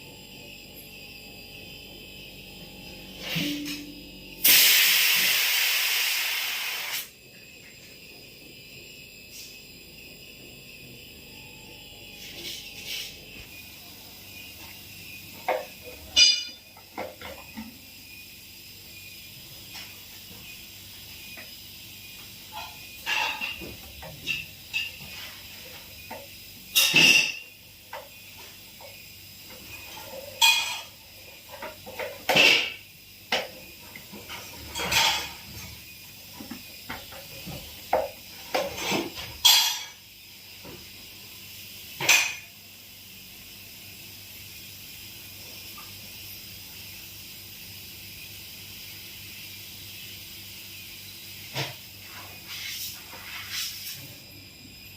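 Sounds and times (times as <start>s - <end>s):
gas hissing from pipes: 3.1s - 7.2s.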